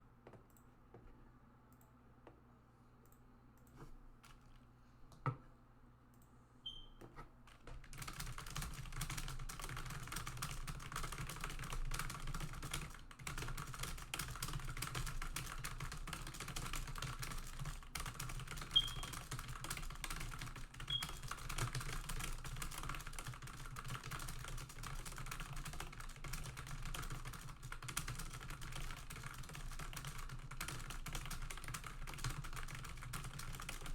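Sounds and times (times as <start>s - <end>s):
fast typing on computer keyboard: 7.5s - 33.9s.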